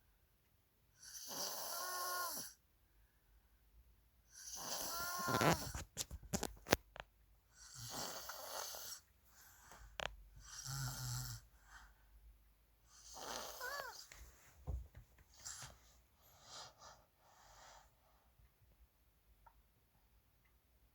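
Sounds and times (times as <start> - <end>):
person snoring: 1.0 - 2.6, 4.4 - 5.7, 10.4 - 11.4.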